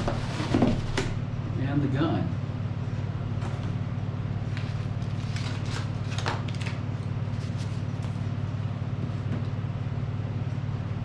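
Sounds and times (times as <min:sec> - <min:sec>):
steady low hum: 0:00.0 - 0:11.0
packaging rustling: 0:04.6 - 0:08.2.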